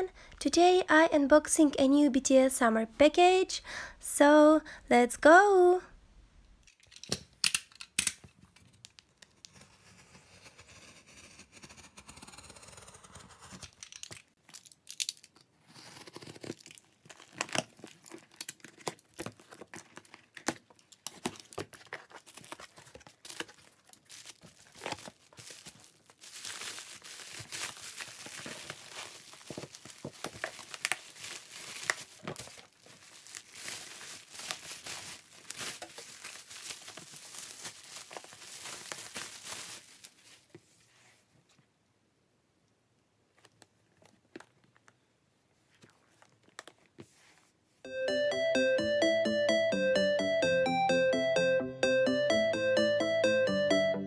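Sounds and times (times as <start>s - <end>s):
packaging crinkling and tearing: 13.6s - 40.5s.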